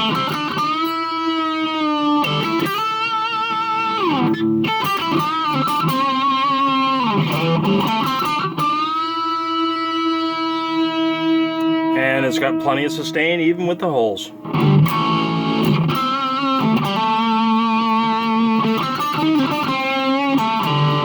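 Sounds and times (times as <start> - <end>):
overdriven electric guitar lead: 0.0 - 21.0.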